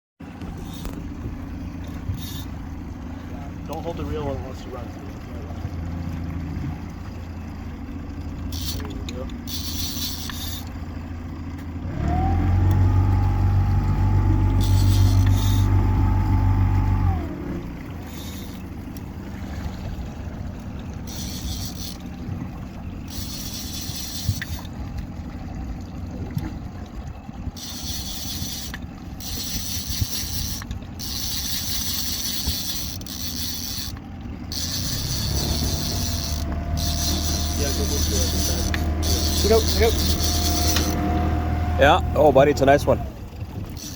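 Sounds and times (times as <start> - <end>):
motor humming: 0.3 - 43.9
fishing reel ratchet clicking: 0.6 - 1.0, 1.8 - 2.6, 8.5 - 10.8, 14.5 - 15.8, 18.0 - 18.7, 21.0 - 22.2, 23.0 - 24.8, 27.6 - 41.0, 43.7 - 43.9.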